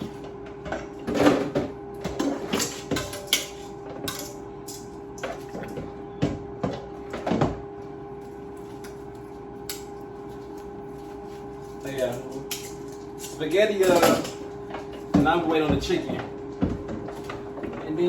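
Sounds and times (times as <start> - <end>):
utensils and dishes clinking: 0.0 - 5.9, 11.7 - 16.3.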